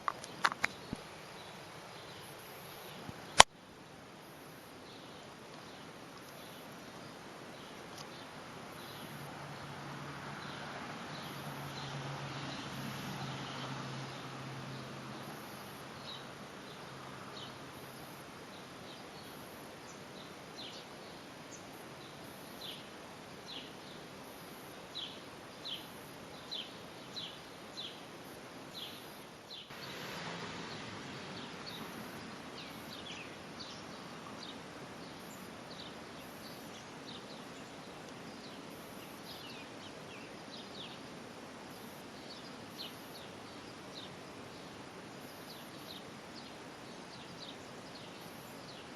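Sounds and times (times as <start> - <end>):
outdoor background hiss: 0.0 - 48.9
birds chirping: 15.2 - 41.1.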